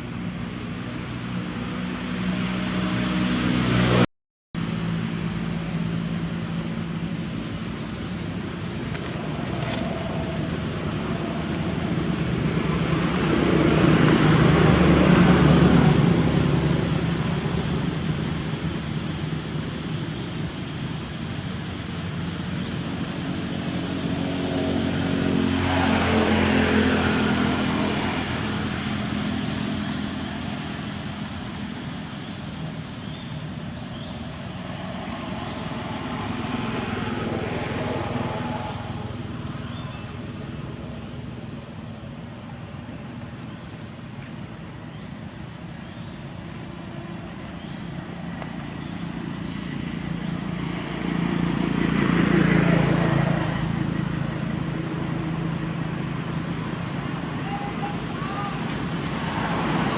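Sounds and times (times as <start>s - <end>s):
vehicles passing by: 0.0s - 42.3s, 46.6s - 59.9s
high-pitched drone: 49.1s - 59.9s.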